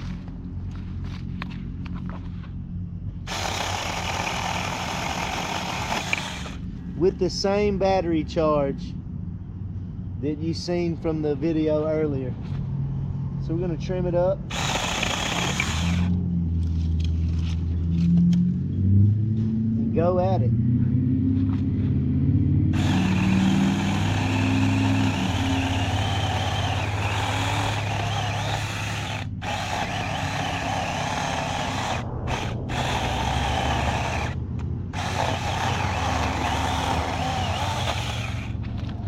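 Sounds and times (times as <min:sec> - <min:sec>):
electric chainsaw cutting wood: 0:03.3 - 0:06.6, 0:14.5 - 0:16.2, 0:22.7 - 0:39.0.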